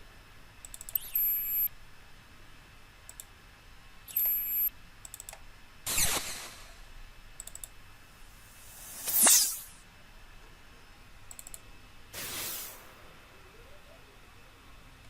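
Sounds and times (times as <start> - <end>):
brief electronic tone: 1.0 - 1.7, 4.1 - 4.7
mouse clicks: 4.1 - 5.4, 7.4 - 7.8, 11.3 - 11.6.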